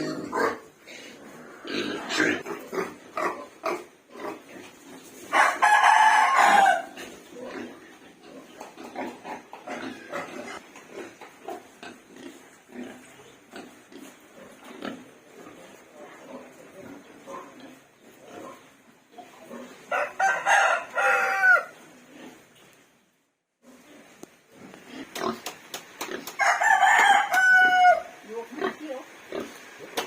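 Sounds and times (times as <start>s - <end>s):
chickens clucking: 0.0s - 30.0s
rooster crowing: 5.3s - 7.0s, 19.9s - 21.8s, 26.4s - 28.2s.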